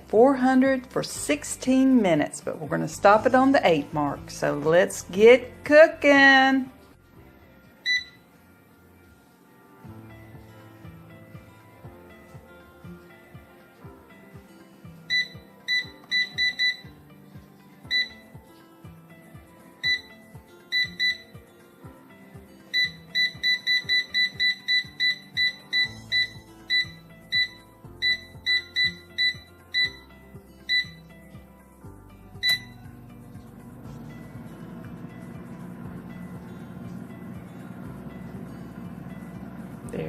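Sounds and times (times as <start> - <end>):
music: 0.0 - 40.0
air fryer control panel beeping: 7.8 - 8.2, 15.1 - 17.0, 17.9 - 18.4, 19.8 - 21.4, 22.7 - 30.1, 30.7 - 31.0, 32.4 - 40.0
fan whirring: 32.4 - 40.0.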